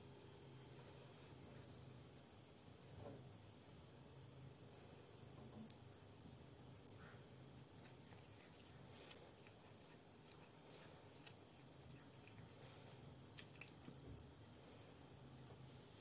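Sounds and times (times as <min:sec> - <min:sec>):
pet chewing grass: 0:06.8 - 0:14.8.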